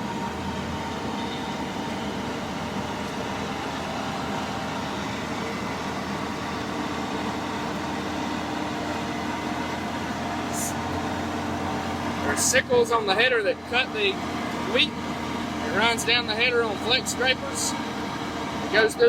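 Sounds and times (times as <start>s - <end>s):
combine harvester engine drone: 0.0s - 19.0s
machinery whining tones: 0.0s - 19.0s.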